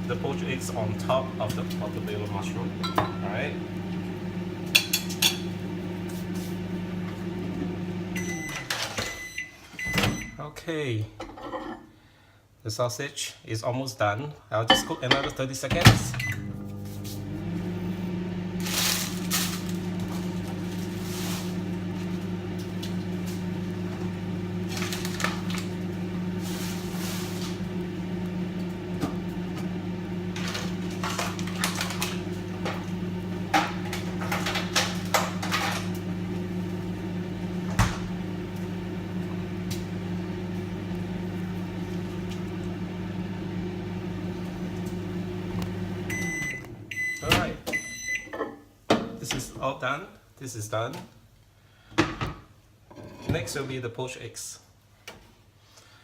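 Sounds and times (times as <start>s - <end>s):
microwave oven humming: 0.0s - 10.4s, 15.8s - 48.7s
food crackling and popping: 18.6s - 36.6s.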